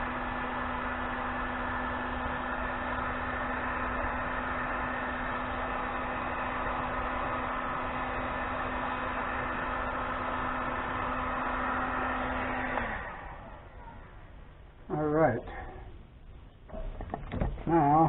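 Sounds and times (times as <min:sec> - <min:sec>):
motor winding down: 0:00.0 - 0:13.8
heat gun fan whining: 0:00.0 - 0:15.1.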